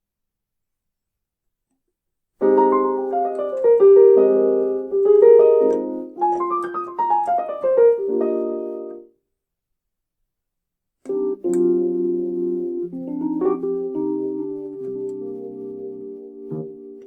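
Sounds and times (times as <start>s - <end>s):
keyboard playing piano runs: 2.4s - 9.0s, 11.1s - 17.0s.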